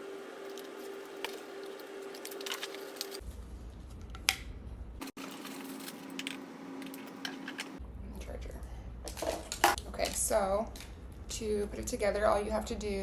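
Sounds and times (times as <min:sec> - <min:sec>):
plastic and cardboard crinkling: 0:00.4 - 0:03.4, 0:05.2 - 0:06.4.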